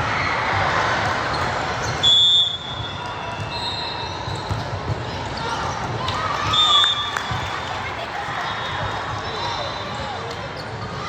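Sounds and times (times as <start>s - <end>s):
indoor gym hubbub: 0.0s - 11.0s
referee's whistle: 2.0s - 4.5s, 6.5s - 7.4s.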